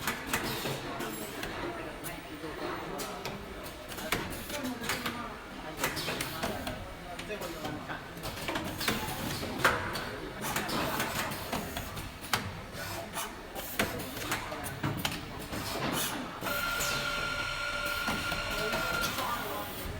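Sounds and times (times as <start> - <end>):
busy mechanical noise: 0.0 - 19.9.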